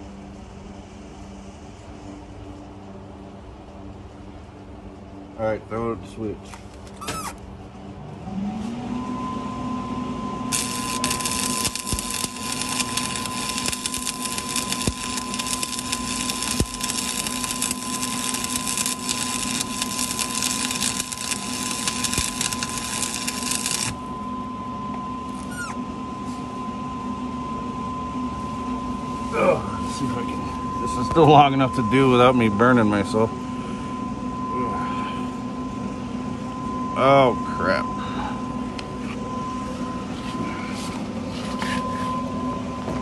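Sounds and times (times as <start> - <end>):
welder humming: 8.0 - 43.0.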